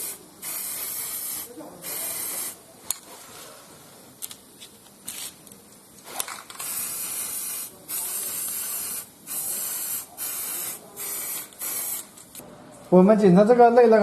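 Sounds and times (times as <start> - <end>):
bursts of hissing: 0.0 - 3.4, 6.0 - 12.2.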